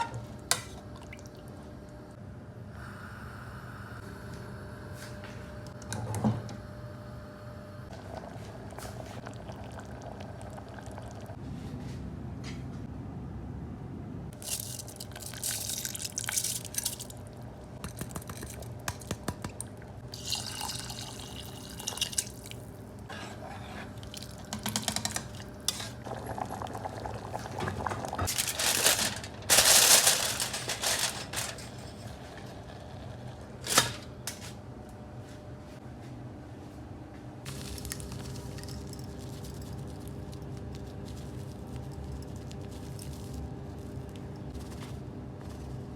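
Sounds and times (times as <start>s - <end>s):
liquid pouring and dripping: 19.6s - 22.6s.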